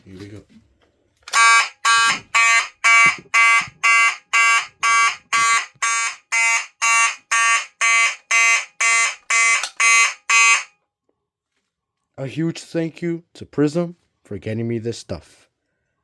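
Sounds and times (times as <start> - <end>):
fire alarm horn blasts: 1.3 - 10.7.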